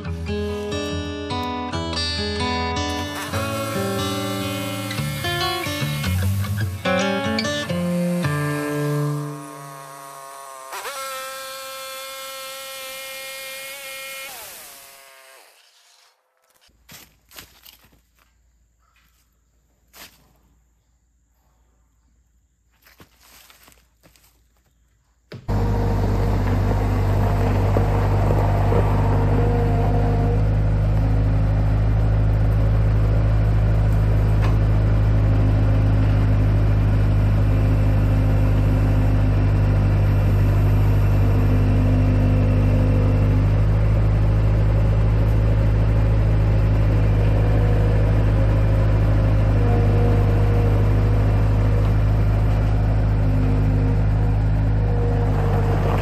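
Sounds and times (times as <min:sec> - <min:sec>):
sawmill engine running under load: 0:02.4 - 0:16.1, 0:25.5 - 0:56.0
band blade sawing log: 0:03.2 - 0:16.7, 0:25.5 - 0:31.0.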